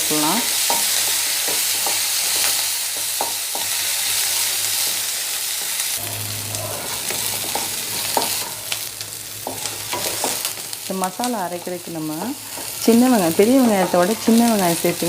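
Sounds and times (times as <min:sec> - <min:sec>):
shallots sizzling in oil: 0:00.0 - 0:15.0
spatula scraping a pan: 0:06.0 - 0:10.7.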